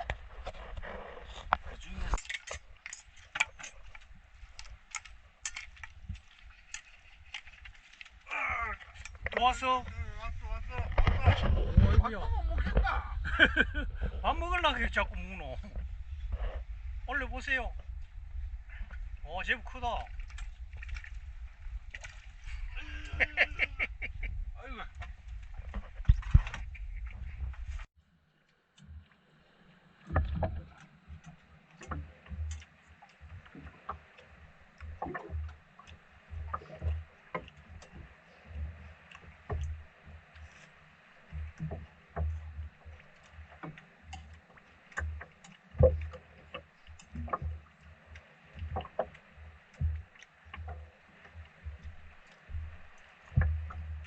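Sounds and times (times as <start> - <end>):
knocks and thumps from boat gear: 0.0 - 6.3, 9.0 - 17.2, 23.1 - 27.9, 30.1 - 34.2, 34.8 - 40.4, 41.3 - 47.9, 48.5 - 54.0.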